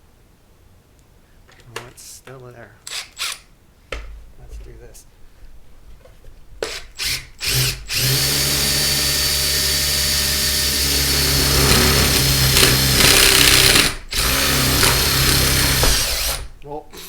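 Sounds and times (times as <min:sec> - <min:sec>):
power drill drilling: 0:06.6 - 0:16.6.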